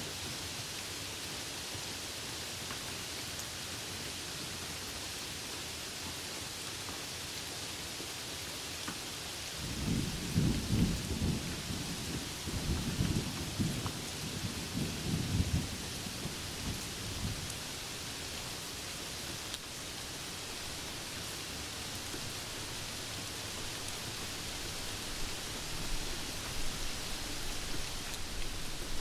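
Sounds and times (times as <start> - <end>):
steady rain: 0.0 - 29.0
thunder rumbling: 9.6 - 29.0.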